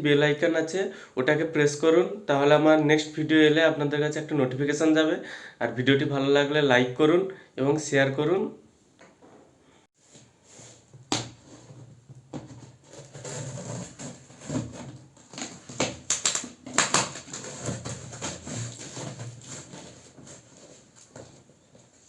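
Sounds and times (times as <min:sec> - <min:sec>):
box and packaging being handled: 0:10.0 - 0:22.0.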